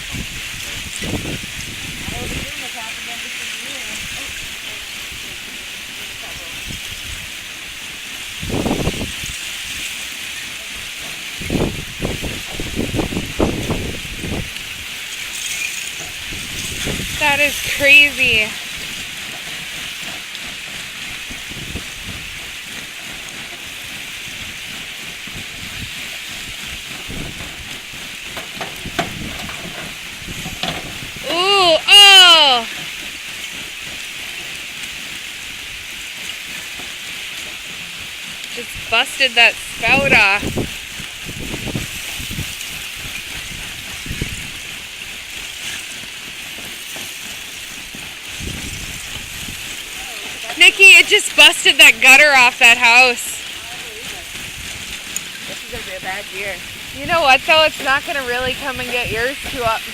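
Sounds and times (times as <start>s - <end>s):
ice plates crackling and sliding: 8.2s - 23.7s, 24.3s - 34.7s, 41.6s - 59.9s
low ice crunches: 14.3s - 18.5s.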